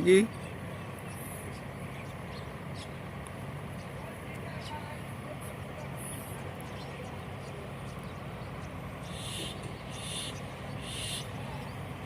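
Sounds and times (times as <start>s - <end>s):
low background hum: 0.0s - 12.0s
high rasping animal calls: 9.0s - 11.4s.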